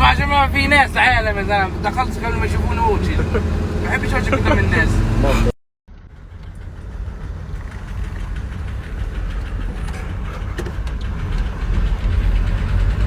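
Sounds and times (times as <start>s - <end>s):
motor vehicle engine and road noise: 0.0s - 13.0s.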